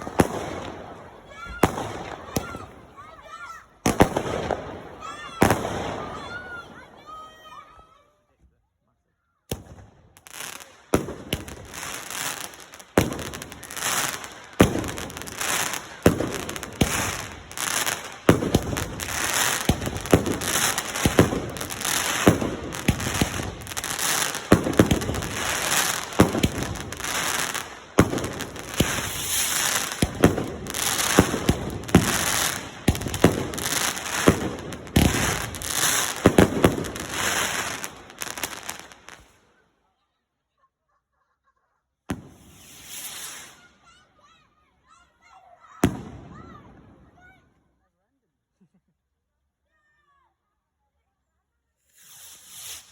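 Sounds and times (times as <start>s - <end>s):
fireworks crackling: 0.0s - 6.8s, 9.5s - 39.6s, 42.1s - 44.0s, 51.8s - 52.9s
fireworks bangs: 0.0s - 7.5s, 9.5s - 39.4s, 42.1s - 44.1s, 45.8s - 47.2s, 51.9s - 52.9s.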